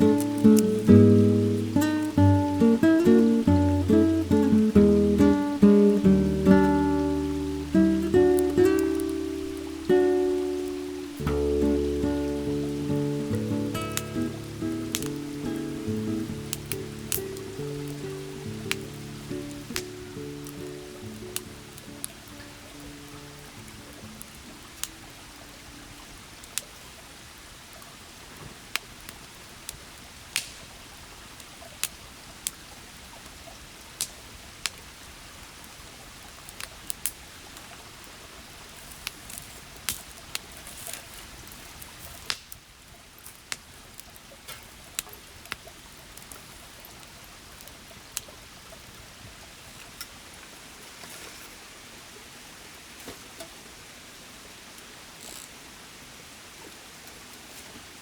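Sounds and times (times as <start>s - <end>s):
river rushing: 0.0s - 27.6s.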